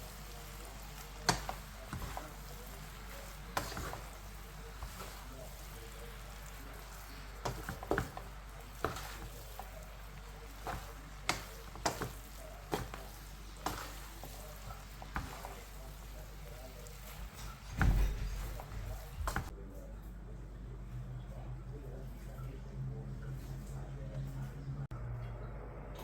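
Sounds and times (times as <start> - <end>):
heavy thump: 17.7 - 19.5.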